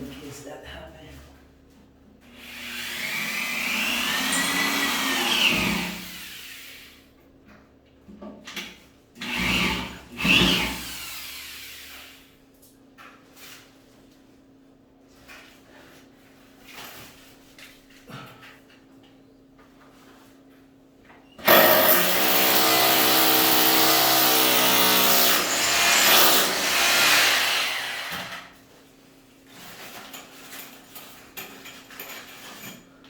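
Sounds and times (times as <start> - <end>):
power drill running: 2.4 - 6.3, 21.4 - 28.5.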